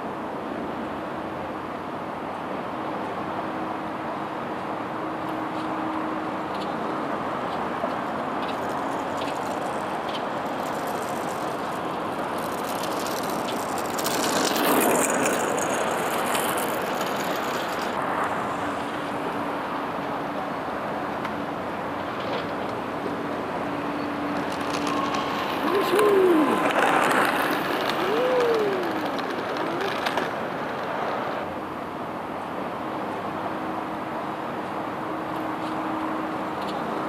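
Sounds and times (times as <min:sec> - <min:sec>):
strong wind: 0:00.0 - 0:37.0
traffic: 0:00.0 - 0:37.0
vehicle passing: 0:04.8 - 0:31.8.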